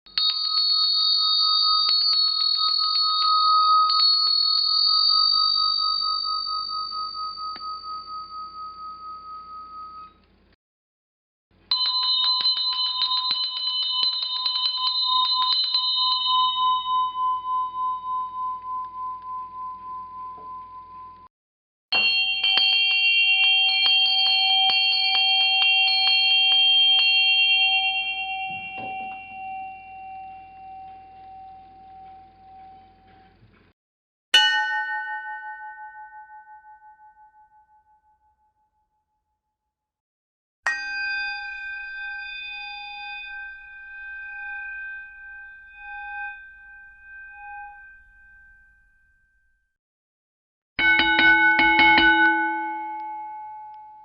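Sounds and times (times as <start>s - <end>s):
small bell jingling: 0.1s - 10.1s, 11.7s - 18.0s, 22.0s - 33.1s
small bell struck and ringing: 0.1s - 10.3s, 11.7s - 21.3s, 21.9s - 33.4s, 34.4s - 39.1s, 40.7s - 49.7s, 50.8s - 54.0s.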